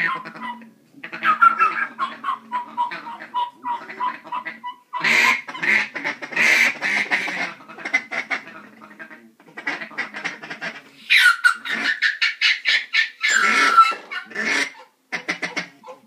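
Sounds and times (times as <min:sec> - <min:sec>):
boy making quacking noises: 0:00.0 - 0:08.1.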